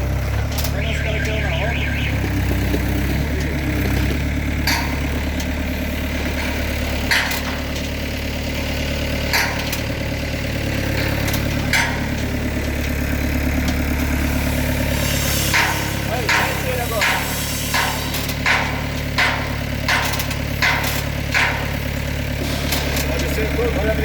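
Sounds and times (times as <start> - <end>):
diesel engine running: 0.0 - 24.0
sharp knocks: 15.5 - 21.8.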